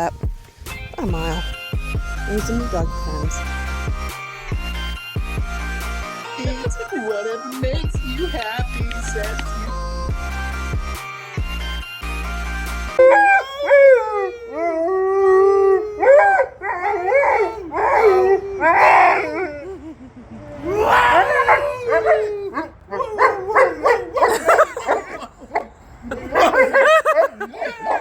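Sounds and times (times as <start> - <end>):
music: 0.0 - 15.2
dog howling: 13.0 - 19.9, 20.5 - 28.0
dog yipping: 16.0 - 19.6, 20.9 - 25.7.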